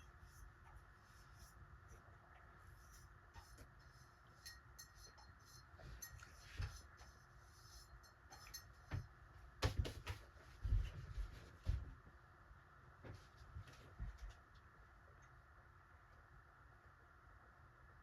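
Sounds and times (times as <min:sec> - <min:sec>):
knocks and bumps: 0:08.9 - 0:11.9.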